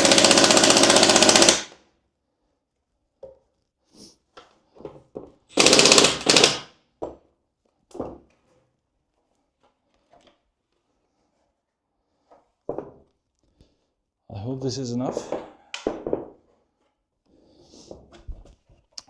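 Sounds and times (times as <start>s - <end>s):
power drill driving bolts: 0.0s - 1.8s, 5.5s - 6.6s.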